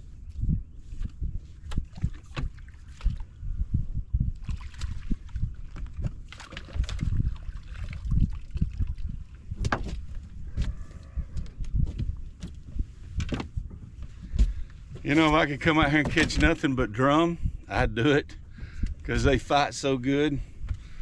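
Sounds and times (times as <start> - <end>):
water lapping against hull: 0.8 - 10.7.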